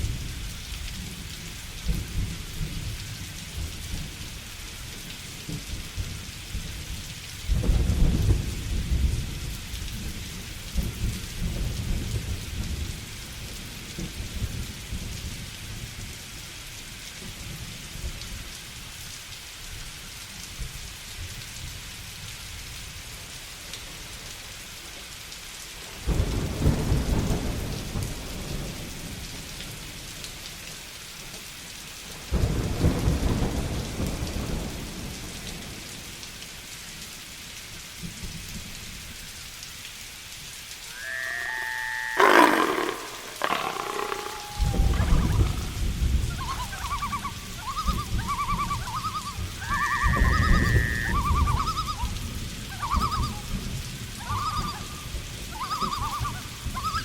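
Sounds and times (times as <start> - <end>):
steady rain: 0.0 - 57.0
thunder rumbling: 42.2 - 47.2.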